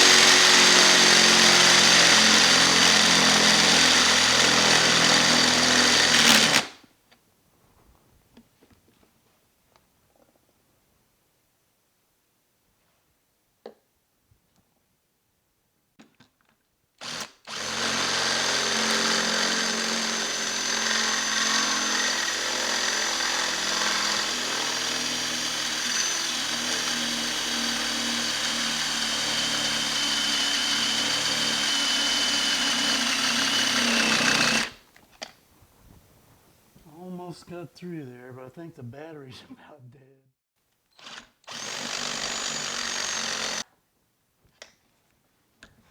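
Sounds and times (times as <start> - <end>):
cordless drill boring metal: 0.0 - 6.7, 17.0 - 34.8, 41.0 - 43.6.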